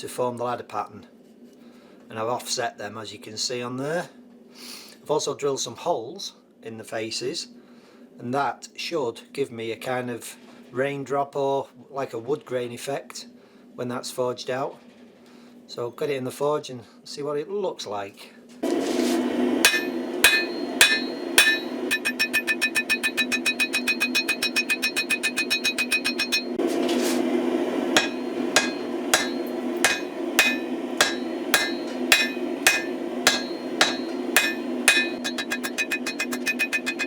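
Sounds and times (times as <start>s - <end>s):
hammer ringing on metal: 19.6s - 26.6s, 28.0s - 37.0s.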